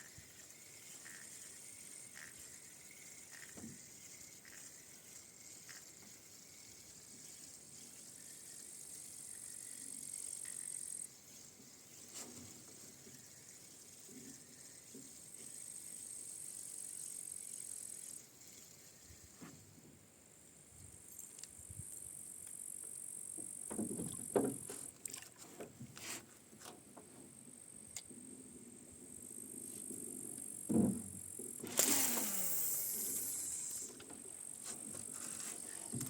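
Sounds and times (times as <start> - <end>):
insect trill: 0.0 - 19.3, 28.9 - 36.0.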